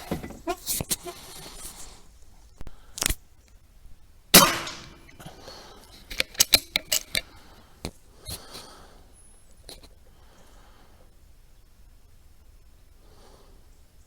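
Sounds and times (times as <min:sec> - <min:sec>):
rifle shot: 0:04.4 - 0:05.4
sharp metallic clicks: 0:04.4 - 0:07.3.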